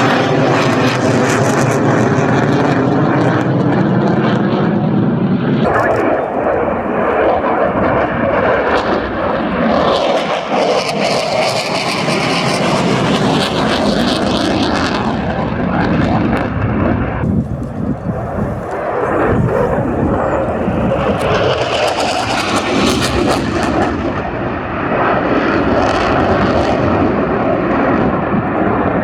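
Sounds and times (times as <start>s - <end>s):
fighter jet engines crackling: 5.6s - 15.2s, 17.2s - 24.5s.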